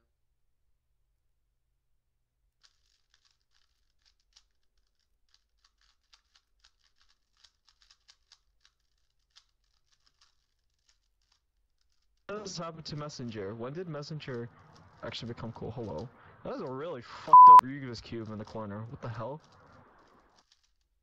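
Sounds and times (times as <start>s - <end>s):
puzzle cube clicking as turned: 2.6s - 12.3s, 14.2s - 16.1s, 19.4s - 21.0s.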